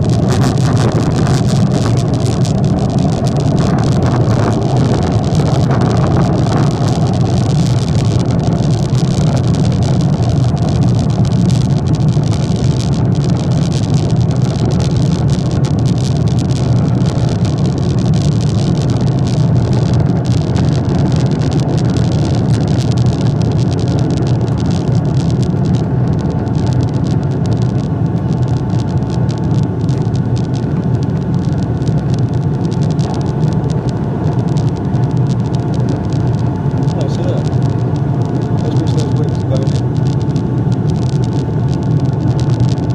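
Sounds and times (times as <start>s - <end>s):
jet engines rumbling: 0.0s - 42.9s.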